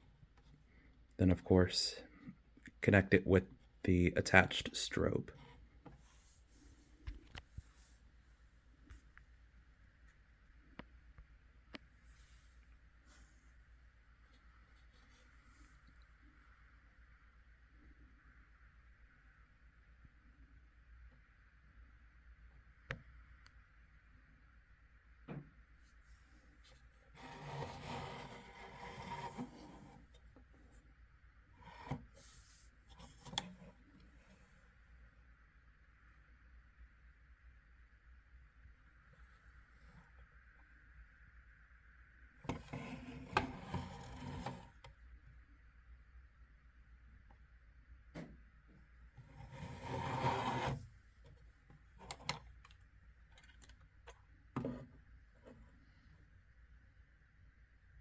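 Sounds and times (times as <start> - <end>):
object scraping against surface: 27.2 - 30.0, 49.2 - 50.8.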